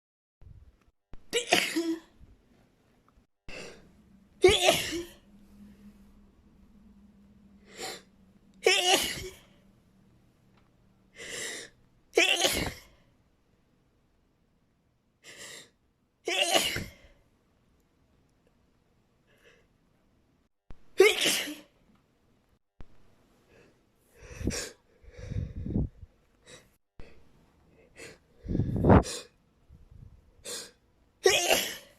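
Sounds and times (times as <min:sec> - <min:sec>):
person sneezing: 0:04.4 - 0:05.2, 0:08.6 - 0:09.5, 0:12.2 - 0:12.9, 0:16.3 - 0:17.1, 0:21.0 - 0:21.7, 0:30.5 - 0:31.9.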